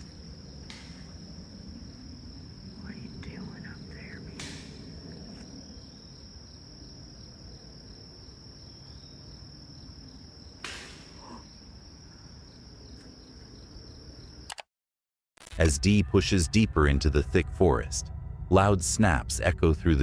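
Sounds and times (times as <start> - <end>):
low outdoor rumble: 0.0 - 6.5, 15.6 - 20.0
crickets trilling: 0.0 - 14.5
sharp snap: 4.4 - 4.8, 10.6 - 11.3.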